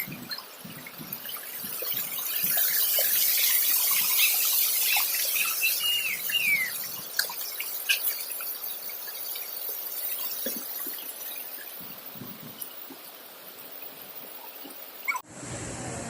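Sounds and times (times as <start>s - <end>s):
running water splashing: 0.0s - 15.2s
high falling chirps: 1.6s - 12.2s.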